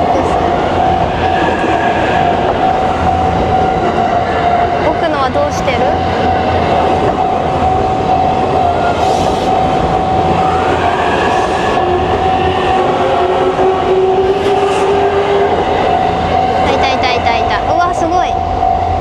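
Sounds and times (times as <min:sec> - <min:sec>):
crossing warning bell ringing: 0:00.0 - 0:19.0.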